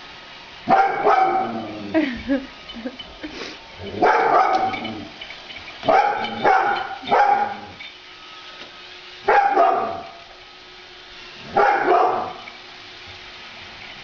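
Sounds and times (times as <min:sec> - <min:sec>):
dog barking: 0:00.7 - 0:01.6, 0:04.0 - 0:04.9, 0:05.8 - 0:07.8, 0:09.3 - 0:10.2, 0:11.5 - 0:12.5.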